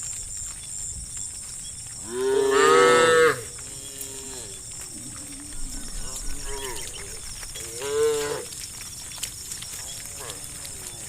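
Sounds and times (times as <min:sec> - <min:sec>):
cows mooing: 0:02.0 - 0:08.6, 0:09.8 - 0:11.0.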